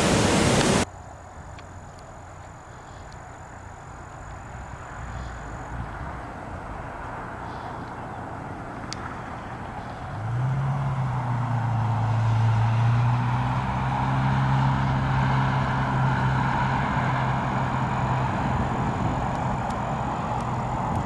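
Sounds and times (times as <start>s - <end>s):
engine running: 0.0s - 0.8s, 4.5s - 21.0s
broad rushing noise: 0.0s - 0.9s.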